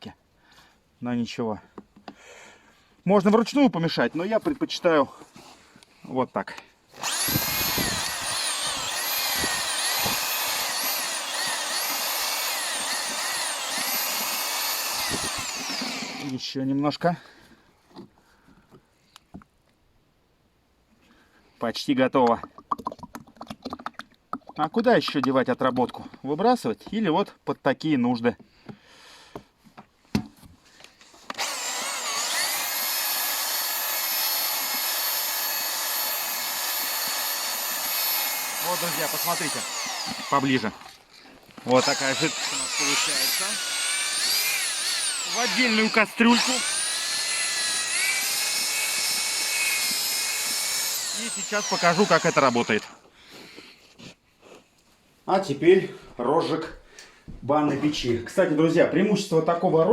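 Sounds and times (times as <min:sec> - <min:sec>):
electric drill motor whine: 0:07.0 - 0:16.3, 0:31.3 - 0:41.0, 0:41.6 - 0:53.0.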